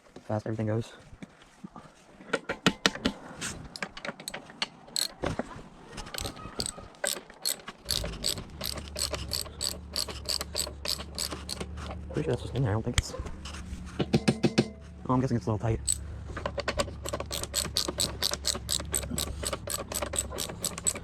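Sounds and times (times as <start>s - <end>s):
ratchet wrench clicking: 5.0s - 5.2s, 6.1s - 11.8s, 15.8s - 16.0s, 16.8s - 21.0s.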